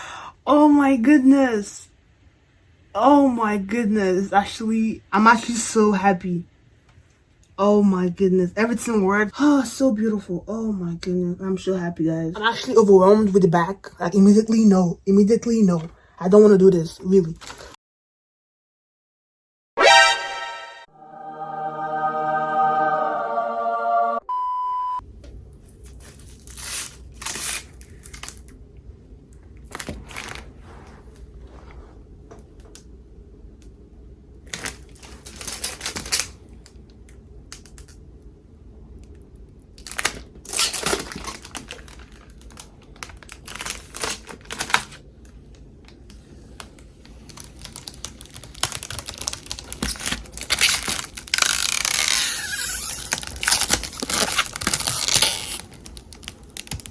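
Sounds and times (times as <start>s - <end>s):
low steady hum: 0.0s - 17.6s, 20.9s - 56.9s
short beep: 24.2s - 25.0s
crinkling and clicking handling: 39.8s - 52.2s, 52.8s - 56.9s.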